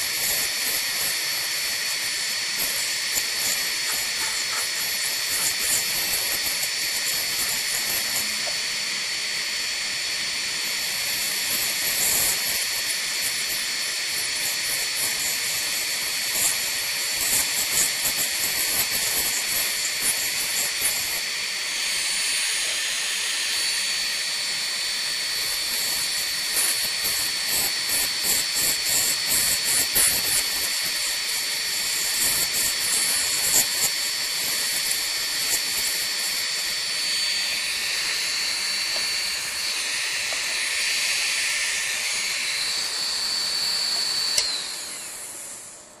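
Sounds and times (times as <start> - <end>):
steady high hiss with whine: 0.0 - 46.0
deburring tool scraping metal: 3.2 - 8.3.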